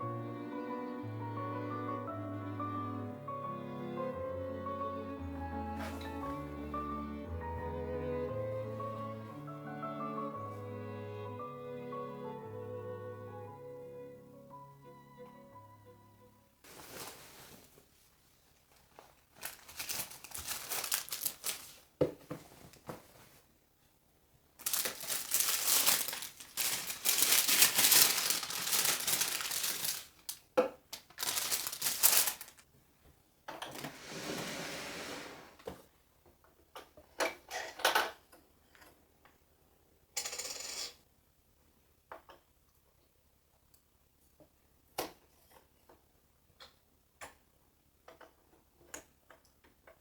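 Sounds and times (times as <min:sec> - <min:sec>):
rustling or scraping: 0:05.7 - 0:06.5, 0:16.6 - 0:23.5, 0:24.6 - 0:30.4, 0:31.2 - 0:32.6, 0:33.7 - 0:35.8.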